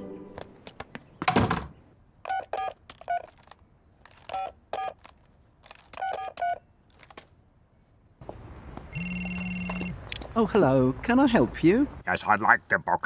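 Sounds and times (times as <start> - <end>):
telephone keypad beeps: 9.0 - 10.0.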